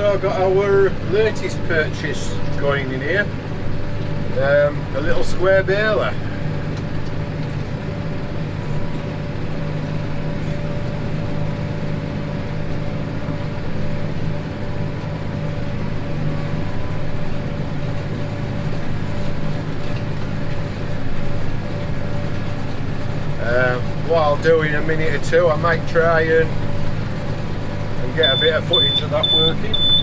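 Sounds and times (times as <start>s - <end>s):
farm machine diesel engine running: 0.0s - 30.0s
thin steady whine: 27.5s - 30.0s.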